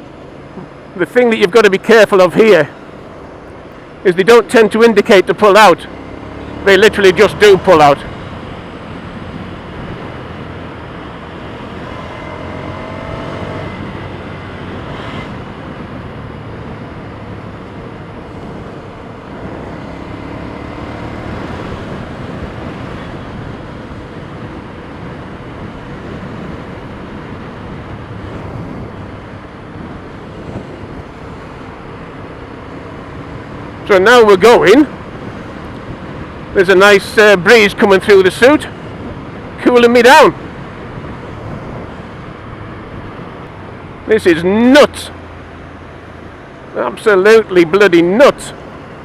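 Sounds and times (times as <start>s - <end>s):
motorcycle engine rumble: 0.0s - 49.0s
road traffic: 0.0s - 49.0s
wind on microphone: 21.1s - 32.0s, 40.3s - 44.0s.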